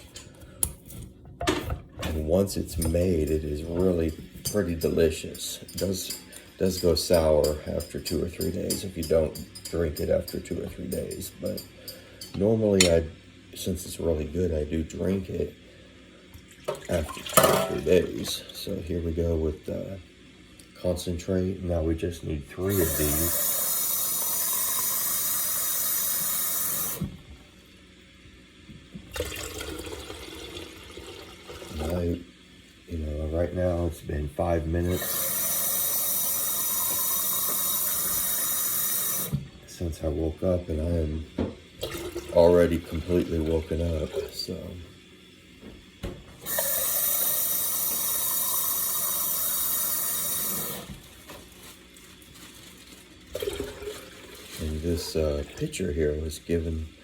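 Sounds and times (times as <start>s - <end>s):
faucet water running: 2.1s - 57.0s
faucet running into a can: 16.4s - 18.6s, 22.6s - 27.1s, 29.0s - 32.2s, 34.8s - 39.4s, 41.8s - 44.6s, 46.4s - 51.4s, 52.8s - 55.9s
water pouring into container: 16.5s - 18.6s, 29.1s - 32.2s, 41.8s - 44.6s, 46.5s - 55.7s.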